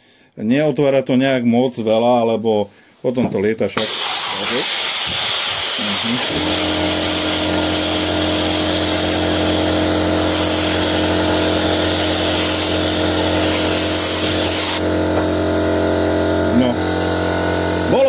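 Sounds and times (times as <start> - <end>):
sandblasting gun hissing: 3.8 - 14.9
air compressor humming: 3.8 - 18.0.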